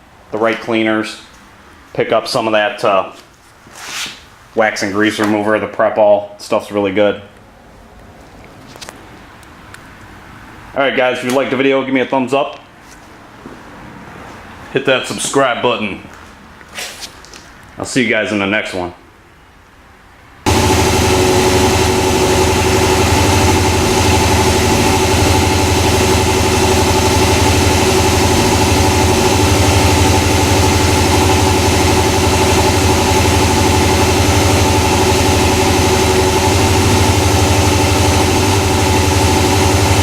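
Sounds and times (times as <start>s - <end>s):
motorcycle engine idling: 20.5s - 40.0s.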